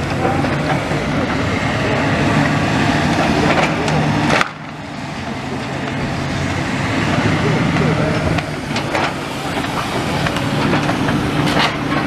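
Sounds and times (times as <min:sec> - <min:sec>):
excavator engine running: 0:00.0 - 0:12.0.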